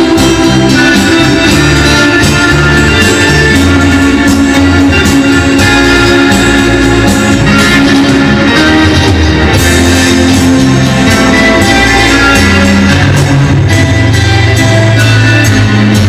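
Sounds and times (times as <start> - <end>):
electric guitar: 0.0 - 16.0
rock and roll music: 0.0 - 16.0.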